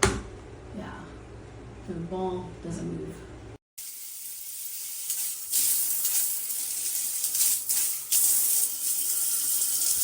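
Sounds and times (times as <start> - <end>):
shower head spraying water: 3.8 - 10.0.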